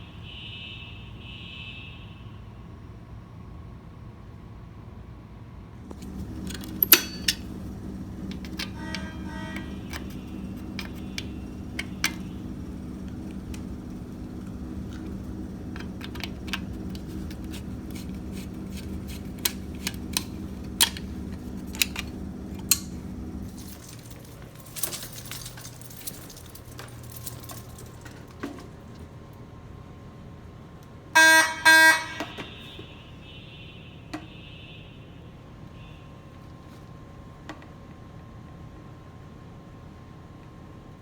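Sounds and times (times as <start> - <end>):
low mechanical hum: 3.4 - 41.0
light metallic jangling: 5.9 - 28.8.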